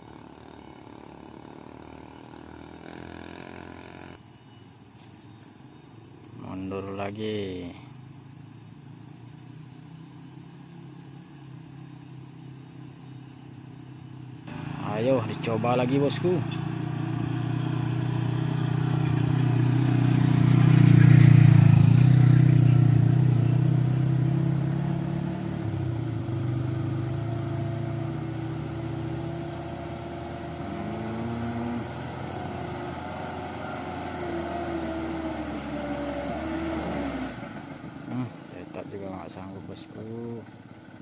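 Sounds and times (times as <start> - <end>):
diesel truck engine straining: 14.5 - 41.0.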